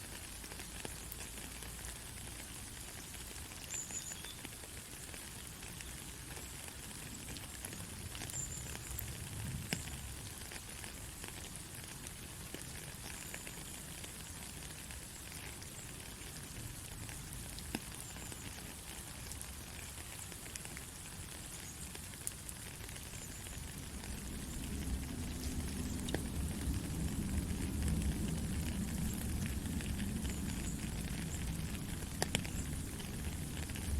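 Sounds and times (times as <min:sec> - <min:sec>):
soft rain falling: 0:00.0 - 0:33.9
single raindrop ticks: 0:21.6 - 0:33.9.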